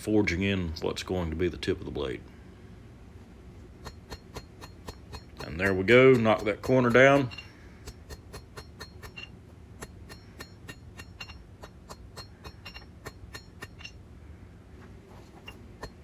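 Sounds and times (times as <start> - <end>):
steady low hum: 0.0 - 16.0
hammer blows on hot steel: 3.8 - 14.0.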